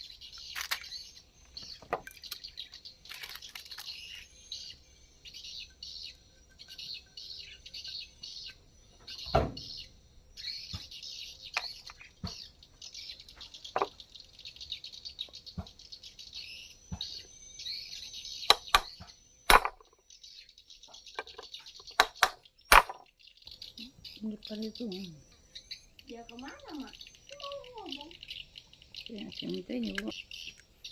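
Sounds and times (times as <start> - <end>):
birds chirping: 0.0 - 30.9
sharp clicks and knocks: 18.5 - 20.0, 21.2 - 23.1.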